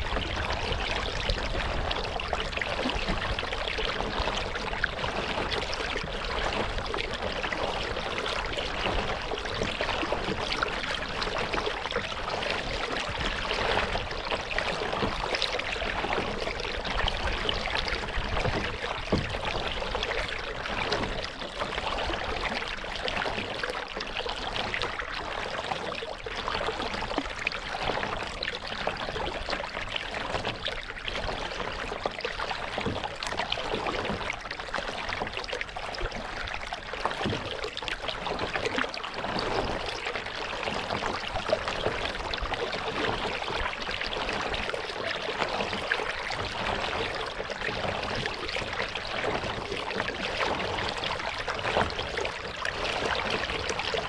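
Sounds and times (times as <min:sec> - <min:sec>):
water splashing around kayak: 0:00.0 - 0:54.0.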